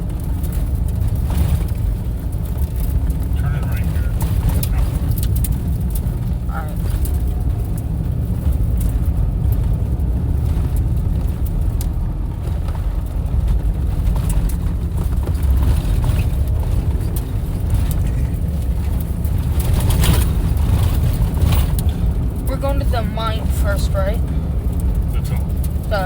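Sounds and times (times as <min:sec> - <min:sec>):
engine and tyres rumbling: 0:00.0 - 0:26.0
rattles from rough ground: 0:00.0 - 0:26.0.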